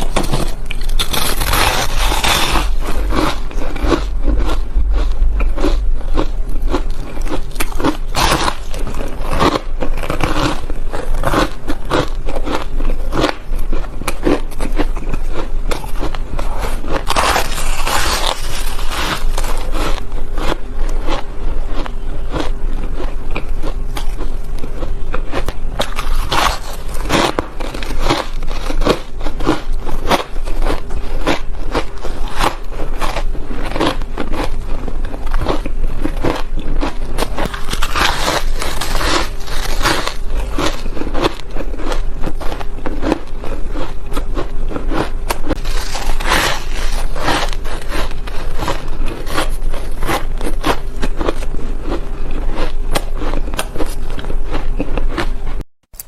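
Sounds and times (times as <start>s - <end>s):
ice crunching: 0.0s - 4.5s, 16.6s - 19.7s, 37.4s - 41.3s, 45.5s - 48.1s.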